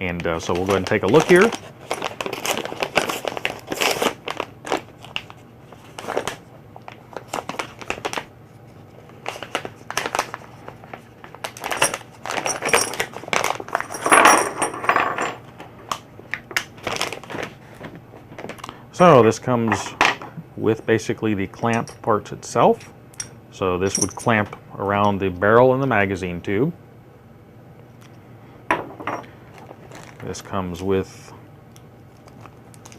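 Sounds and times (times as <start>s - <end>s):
packaging crinkling: 0.2s - 8.3s, 8.9s - 14.0s, 16.5s - 18.8s, 29.5s - 30.4s, 31.7s - 32.9s.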